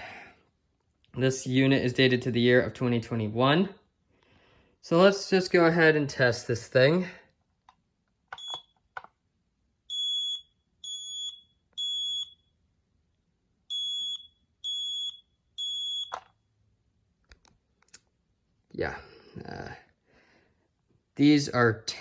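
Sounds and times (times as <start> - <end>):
smoke alarm high-pitched beeps: 8.4 - 8.8, 9.9 - 12.6, 13.7 - 16.2.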